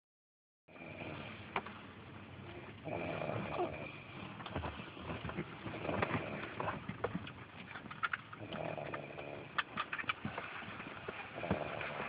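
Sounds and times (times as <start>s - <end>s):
person snoring: 2.8s - 4.0s, 8.4s - 9.5s, 11.4s - 12.0s.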